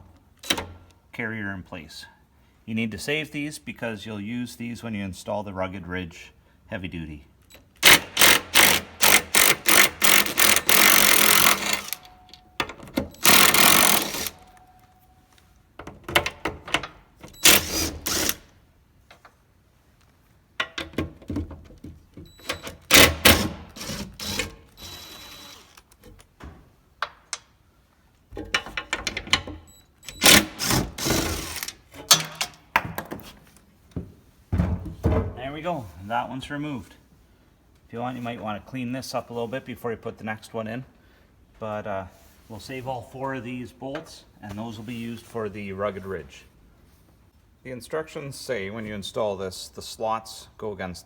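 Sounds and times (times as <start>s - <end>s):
cordless impact driver hammering: 7.8s - 12.0s, 13.2s - 14.4s, 22.9s - 25.5s, 30.1s - 31.7s.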